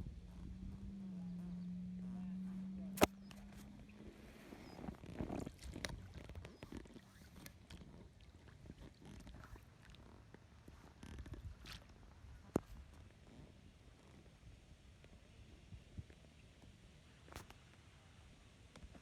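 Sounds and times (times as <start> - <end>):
wind buffeting microphone: 0.0 - 6.9
buzzing hum: 0.0 - 7.9
sharp click: 2.9 - 3.7.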